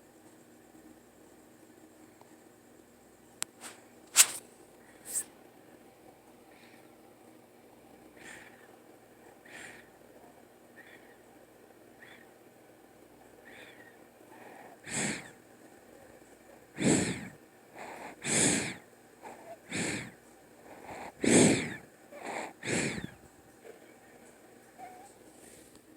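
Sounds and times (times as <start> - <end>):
rough wheezy snoring: 14.4 - 15.3, 16.8 - 23.8.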